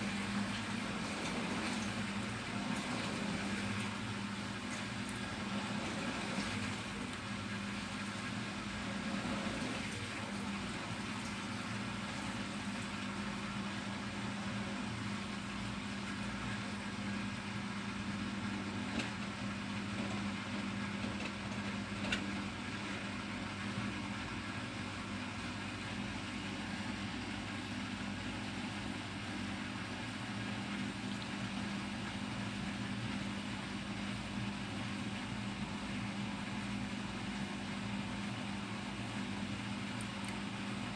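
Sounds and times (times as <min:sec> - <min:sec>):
washing machine motor hum: 0:00.0 - 0:40.9.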